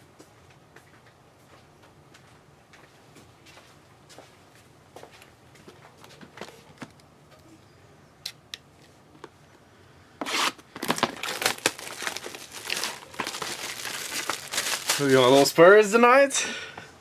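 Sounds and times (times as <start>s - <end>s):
foil wrapper tearing and crinkling: 10.3s - 15.6s.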